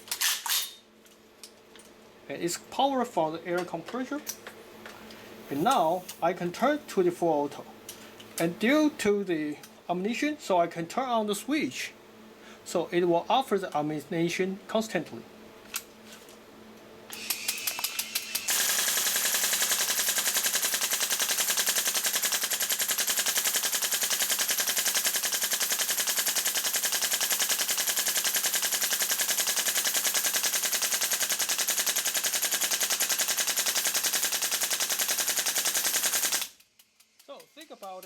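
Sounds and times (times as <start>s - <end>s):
airsoft pistol firing full auto: 18.4s - 36.6s.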